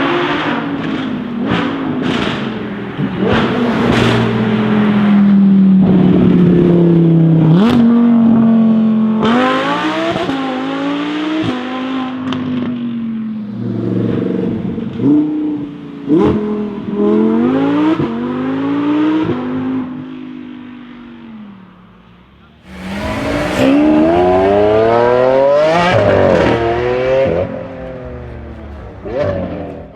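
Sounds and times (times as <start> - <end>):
exhaust cracks on upshifts: 0.0 - 5.2
sports car engine accelerating: 0.0 - 20.1, 22.6 - 29.9.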